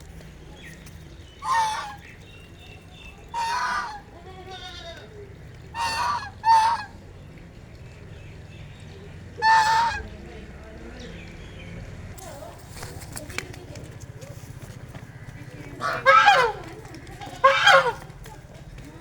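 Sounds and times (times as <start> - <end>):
ducks quacking: 1.4 - 2.2, 3.2 - 4.8, 5.6 - 7.1, 9.4 - 10.1, 14.5 - 18.3.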